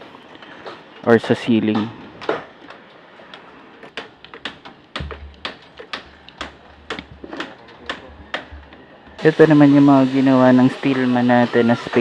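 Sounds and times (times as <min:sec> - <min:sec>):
sharp irregular knocks: 0:01.7 - 0:09.2.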